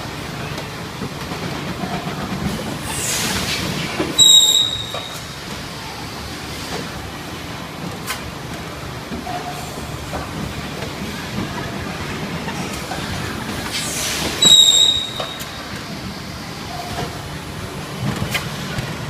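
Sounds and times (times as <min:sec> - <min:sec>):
hiss: 0:02.8 - 0:05.3, 0:13.6 - 0:15.7.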